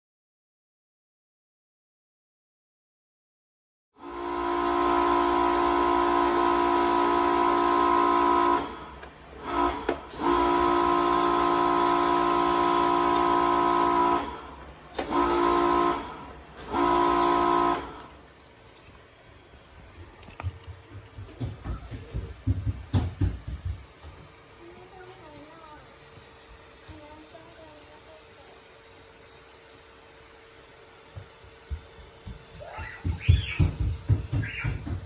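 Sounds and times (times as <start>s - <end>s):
pressure washer whine: 4.0s - 18.9s, 21.6s - 35.0s
water spray hiss: 21.6s - 35.0s.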